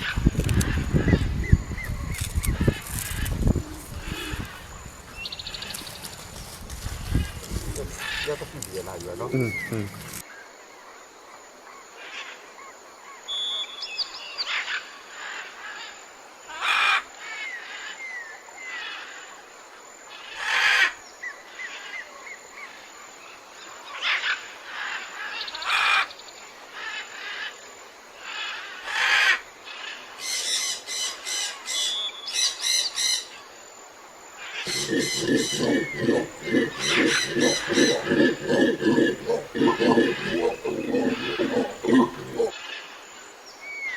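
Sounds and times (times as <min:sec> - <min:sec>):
animal high chirps: 0:34.7 - 0:42.5
harsh animal calls: 0:34.7 - 0:42.6.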